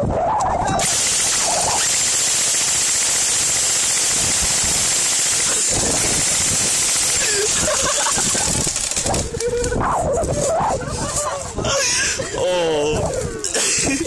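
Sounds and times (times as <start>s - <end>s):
airsoft guns firing full-auto: 0.8s - 9.3s.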